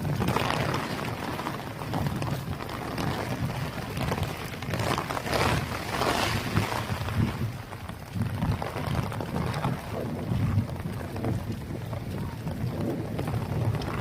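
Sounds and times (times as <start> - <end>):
heavy rain falling: 0.0 - 14.0
low uneven rumble: 0.0 - 14.0.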